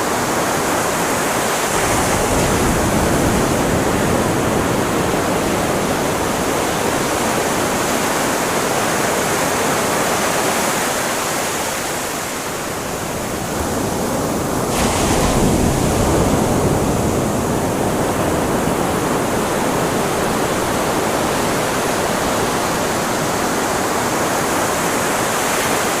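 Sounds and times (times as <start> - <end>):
ocean surf washing onto beach: 0.0 - 26.0
wave breaking: 12.3 - 26.0.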